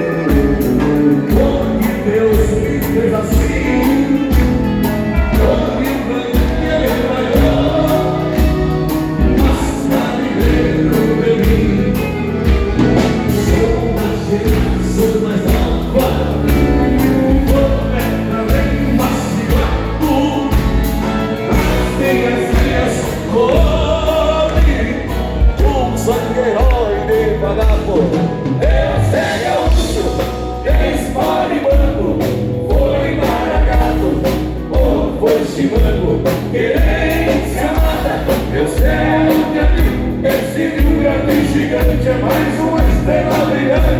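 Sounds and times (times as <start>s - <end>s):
live band playing: 0.0s - 43.9s
person singing: 0.0s - 43.9s.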